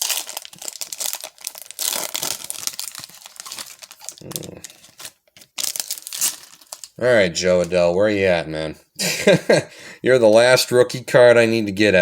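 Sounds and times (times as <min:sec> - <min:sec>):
foil wrapper tearing and crinkling: 0:00.0 - 0:07.0.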